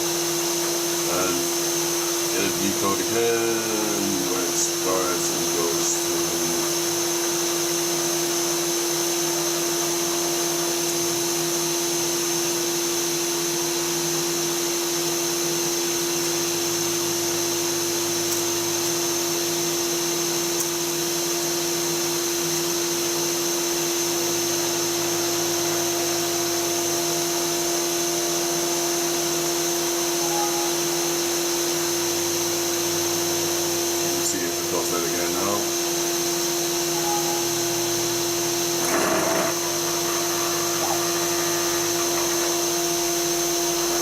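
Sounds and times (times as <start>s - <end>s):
spindle motor whine: 0.0s - 44.0s
low hum: 29.1s - 44.0s.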